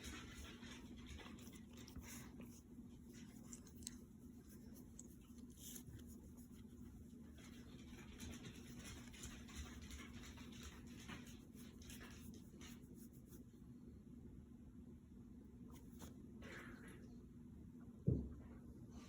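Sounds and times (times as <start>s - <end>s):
faint scratching and rustling: 0.0s - 13.6s
low steady hum: 0.0s - 19.0s.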